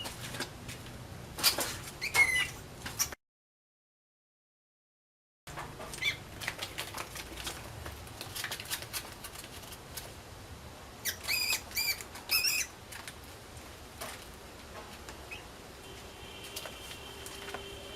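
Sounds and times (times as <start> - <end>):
mouse squeaking: 2.0 - 3.2, 5.9 - 6.2, 11.0 - 12.8, 15.2 - 15.5.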